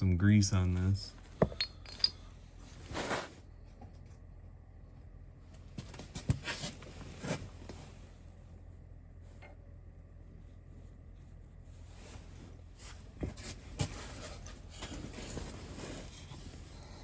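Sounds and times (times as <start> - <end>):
low room hum: 0.0 - 17.0
rustling: 1.2 - 3.4.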